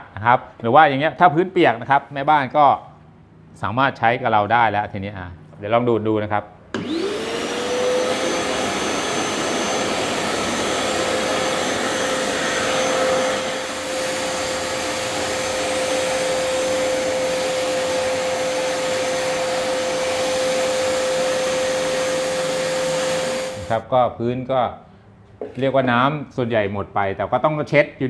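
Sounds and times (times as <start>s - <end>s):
vacuum cleaner sucking water: 6.8s - 23.8s.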